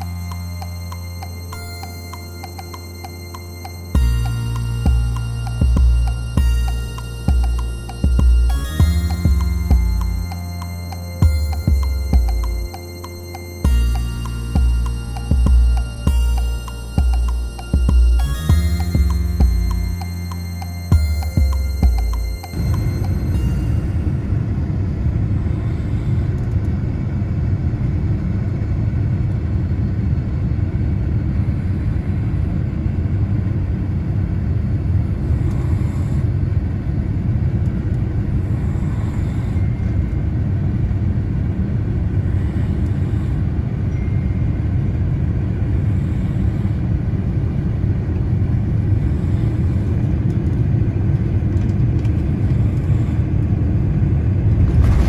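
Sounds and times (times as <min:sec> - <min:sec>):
airliner cabin engine rumble: 0:21.8 - 0:55.0.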